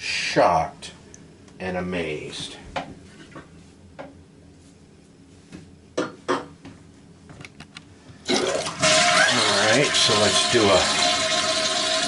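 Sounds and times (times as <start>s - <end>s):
toilet flushing: 8.2s - 12.0s.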